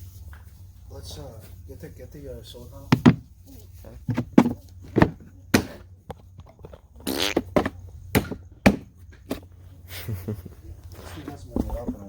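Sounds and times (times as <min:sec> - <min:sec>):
sharp knocks and thuds: 0:02.9 - 0:03.3, 0:04.0 - 0:06.8, 0:07.4 - 0:09.5
harsh rasping sound: 0:07.0 - 0:07.7.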